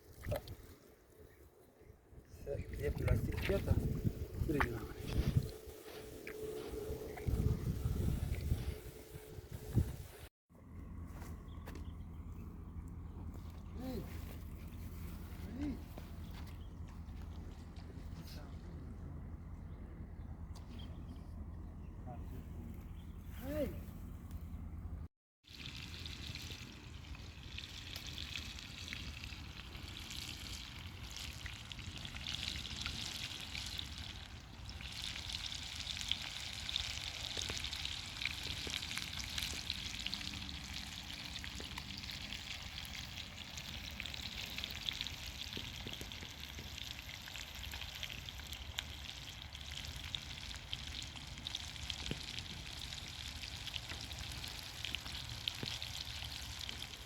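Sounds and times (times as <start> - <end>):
fish frying with pops and crackles: 25.4 - 57.0.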